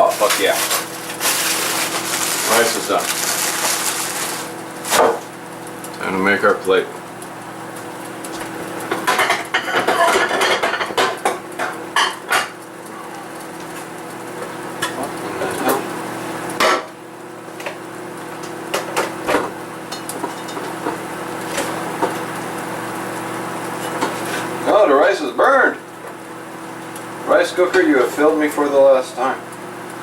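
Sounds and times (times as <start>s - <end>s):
dishes and utensils clattering: 9.0s - 12.5s.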